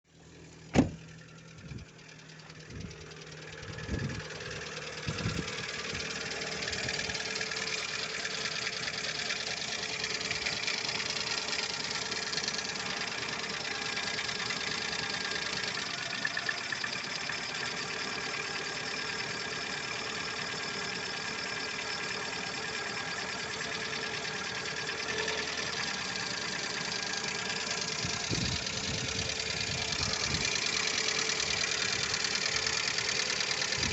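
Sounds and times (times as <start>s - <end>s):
engine idling with ticking knock: 0.1s - 33.9s
sharp thump: 0.7s - 1.0s.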